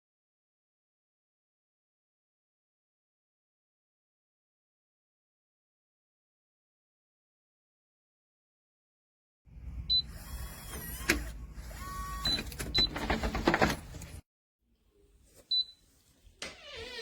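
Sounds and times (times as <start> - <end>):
lock mechanism whirring and rattling: 10.1 - 14.2.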